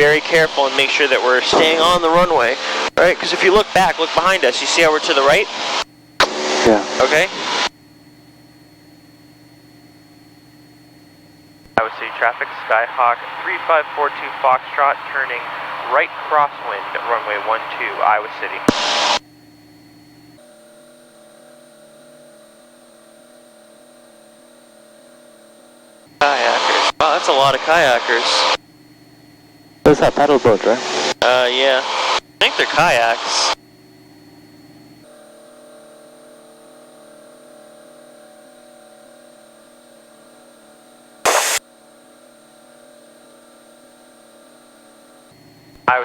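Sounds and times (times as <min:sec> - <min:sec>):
aircraft engine drone: 0:00.0 - 0:07.7, 0:11.8 - 0:19.2, 0:26.2 - 0:28.6, 0:29.9 - 0:33.6, 0:41.3 - 0:41.6
loud burst of static: 0:00.0 - 0:07.7, 0:11.8 - 0:19.2, 0:26.2 - 0:28.6, 0:29.9 - 0:33.6, 0:41.3 - 0:41.6.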